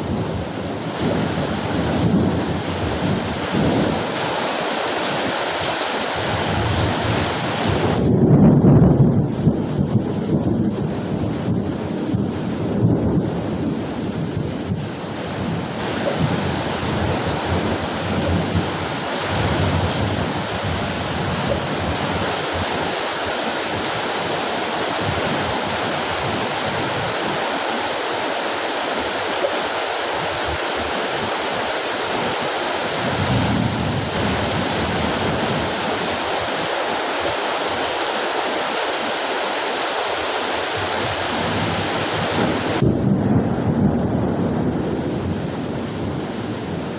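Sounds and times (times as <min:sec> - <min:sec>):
thunder rolling: 0:00.0 - 0:04.5, 0:06.2 - 0:22.8, 0:30.2 - 0:36.3, 0:41.0 - 0:46.9
heavy rain pouring: 0:00.0 - 0:46.9.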